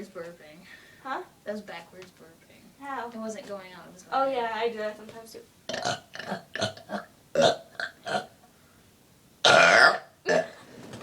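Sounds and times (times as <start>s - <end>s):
person burping: 5.7s - 8.4s, 9.4s - 10.6s.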